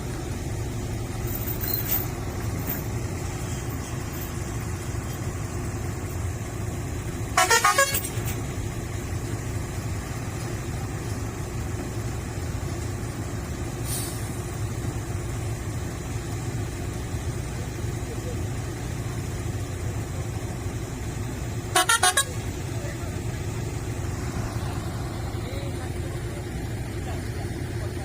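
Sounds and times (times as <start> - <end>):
diesel engine running: 0.0 - 28.0
vehicle horn toots: 7.4 - 8.3, 21.7 - 22.4.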